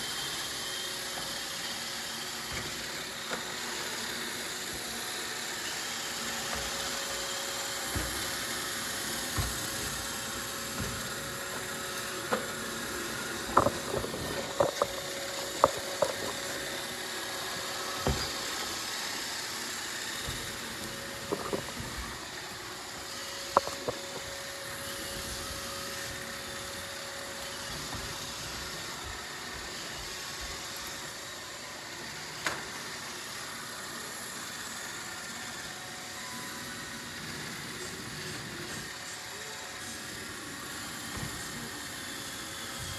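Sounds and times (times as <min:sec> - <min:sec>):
robot vacuum whirring: 0:00.0 - 0:42.9
sharp clicks and knocks: 0:13.4 - 0:16.6, 0:23.5 - 0:24.1.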